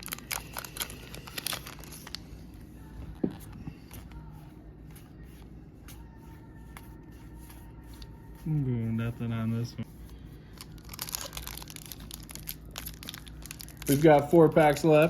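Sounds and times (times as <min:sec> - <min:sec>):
foil wrapper crinkling: 0:00.0 - 0:02.4, 0:10.4 - 0:15.0
cards rustling and clicking: 0:10.5 - 0:15.0.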